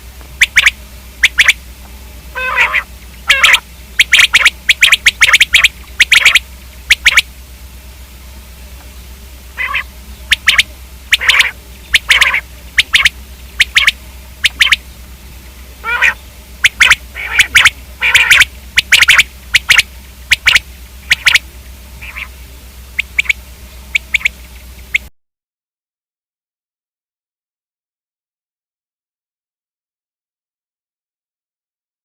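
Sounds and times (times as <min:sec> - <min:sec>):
steady low hum: 0:00.0 - 0:25.1
quail calling: 0:00.3 - 0:01.6, 0:02.3 - 0:07.3, 0:09.5 - 0:25.1.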